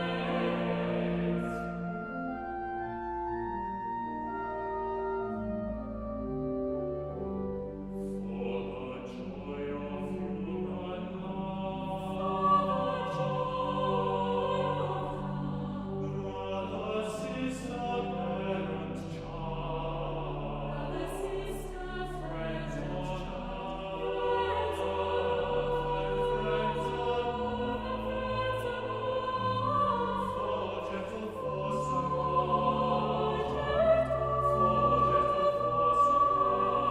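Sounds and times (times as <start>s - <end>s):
choir singing: 0.0s - 36.9s
organ: 0.0s - 36.9s.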